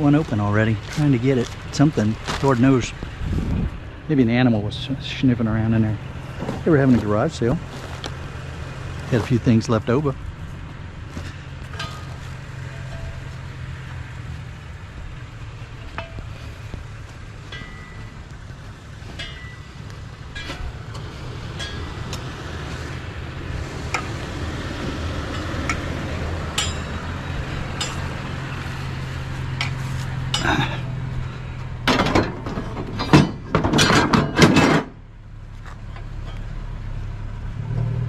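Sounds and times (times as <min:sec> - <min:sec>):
low steady hum: 0:00.0 - 0:38.0
metal clanking and clattering: 0:10.6 - 0:35.0, 0:35.6 - 0:36.6
metal scrap clinking: 0:11.1 - 0:31.2, 0:31.8 - 0:35.0.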